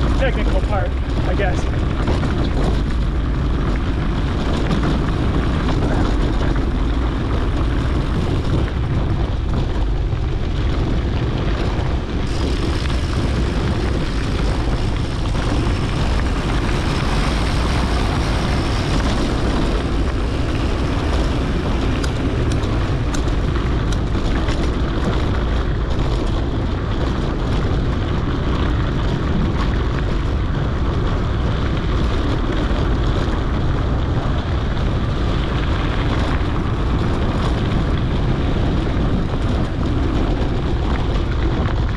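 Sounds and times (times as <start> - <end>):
bike tyre and frame noise: 0.0 - 41.9
wind rumble on microphone: 0.0 - 41.9.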